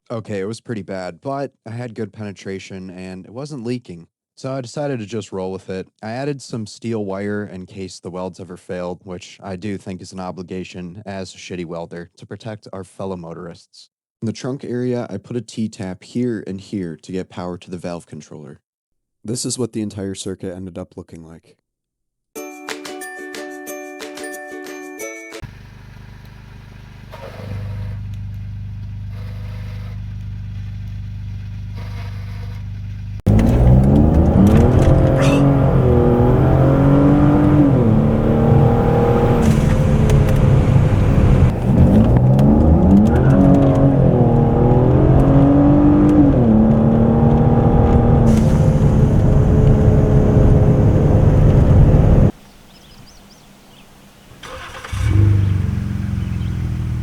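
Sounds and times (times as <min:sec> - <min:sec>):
car engine idling: 0:25.4 - 0:44.9, 0:46.5 - 0:52.3, 0:54.4 - 0:57.0
car engine revving: 0:25.4 - 0:52.3, 0:54.4 - 0:57.0.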